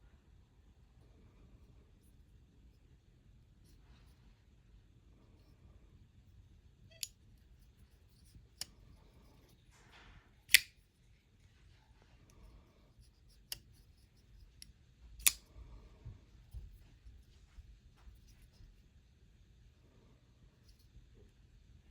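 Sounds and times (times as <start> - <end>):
pocketknife blade clicking: 10.5 - 10.8, 14.6 - 15.4.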